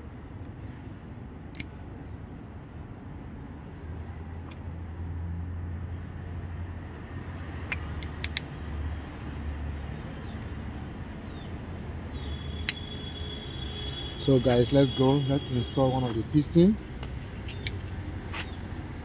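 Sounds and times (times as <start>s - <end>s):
light metallic clicks: 7.6s - 8.6s, 17.0s - 18.6s.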